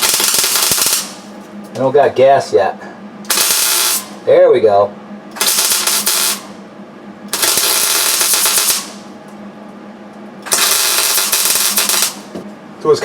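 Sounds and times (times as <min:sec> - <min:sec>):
welder crackling and sizzling: 0:00.0 - 0:01.3, 0:03.3 - 0:04.2, 0:05.4 - 0:06.5, 0:07.3 - 0:09.0, 0:10.5 - 0:12.3
steady low hum: 0:00.0 - 0:13.0.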